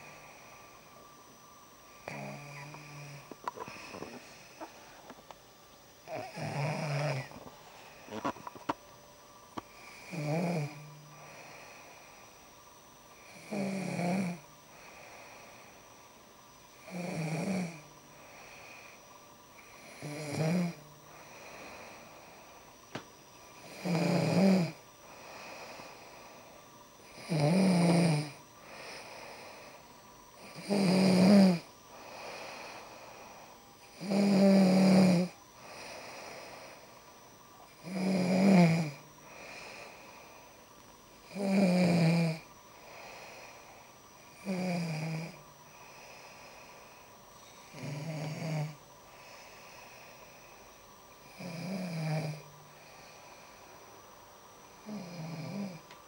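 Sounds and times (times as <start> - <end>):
soft breathing: 0.0 - 5.4, 6.0 - 8.8, 9.6 - 12.7, 14.7 - 16.1, 18.1 - 19.9, 20.9 - 23.8, 24.7 - 26.9, 28.4 - 30.6, 31.8 - 33.8, 35.5 - 37.7, 39.0 - 40.8, 42.5 - 44.4, 45.3 - 47.8, 49.0 - 51.4, 52.3 - 55.1
woman snoring: 2.0 - 4.9, 6.0 - 8.4, 9.8 - 12.1, 13.2 - 15.7, 16.8 - 19.0, 19.6 - 22.4, 23.6 - 26.4, 27.0 - 29.8, 30.4 - 37.0, 37.7 - 40.5, 41.2 - 47.0, 47.7 - 50.5, 51.2 - 53.6, 54.8 - 55.9.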